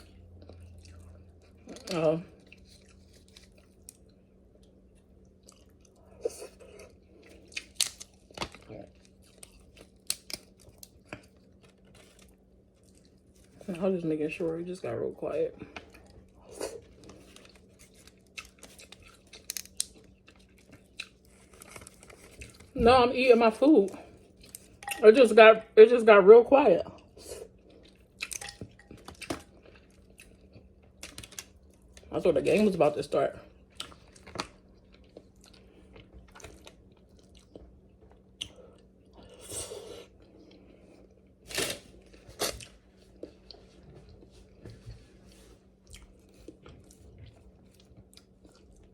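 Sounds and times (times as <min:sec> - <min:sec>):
soft chewing: 0:00.0 - 0:13.8, 0:15.5 - 0:22.8, 0:26.9 - 0:32.1, 0:33.4 - 0:48.9
crab shell clicks and crinkles: 0:07.4 - 0:12.2, 0:17.0 - 0:22.7, 0:30.3 - 0:32.0.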